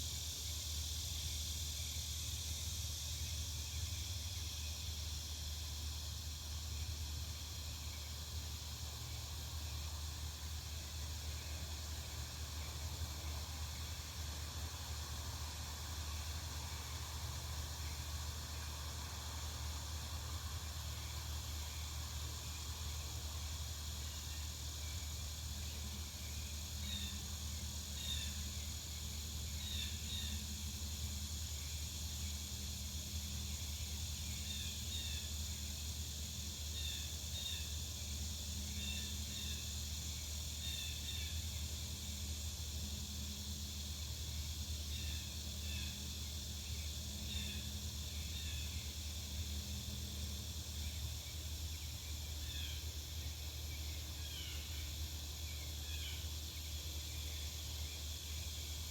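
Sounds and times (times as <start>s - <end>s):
insects hissing: 0.0s - 58.9s.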